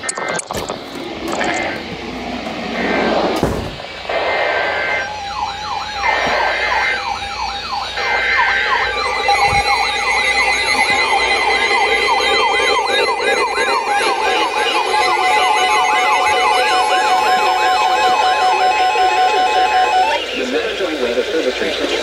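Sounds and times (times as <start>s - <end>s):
electronic siren yelp: 2.6s - 22.0s
buzzy alert tones: 4.0s - 20.2s
wavering high tone: 4.0s - 20.3s.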